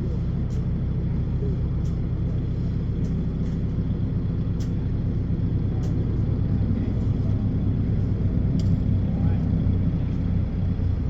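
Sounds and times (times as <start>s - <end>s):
road noise: 0.0s - 11.0s
vehicle engine drone: 0.0s - 11.0s.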